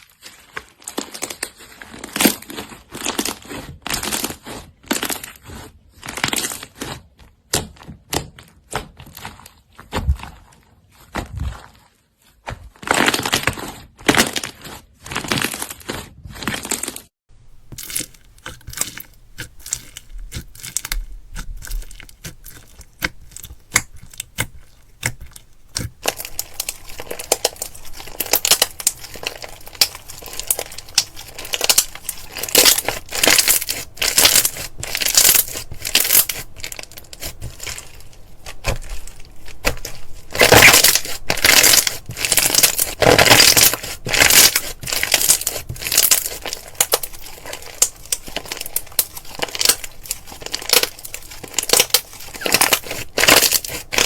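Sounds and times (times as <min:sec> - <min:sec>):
slime crackling and popping: 0:12.8 - 0:54.0
slime squelching: 0:17.4 - 0:54.0.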